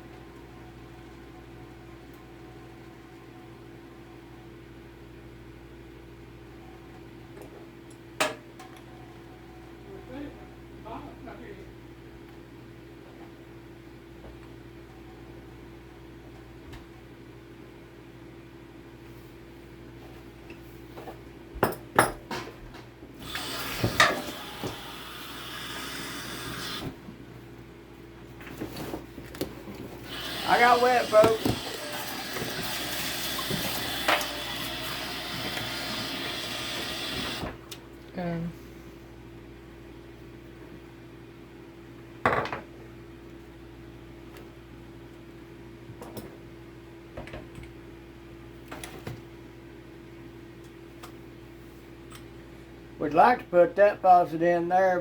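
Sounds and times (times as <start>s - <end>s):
steady mechanical hum: 0.0s - 55.0s
water spraying from sink sprayer: 23.2s - 27.0s, 30.0s - 37.6s.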